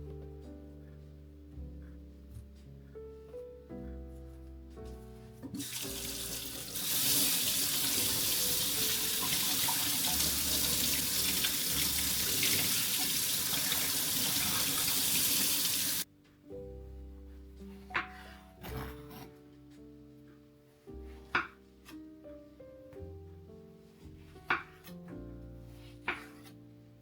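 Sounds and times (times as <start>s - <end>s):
soft piano music: 0.0s - 27.0s
water running from tap into sink: 5.5s - 16.0s.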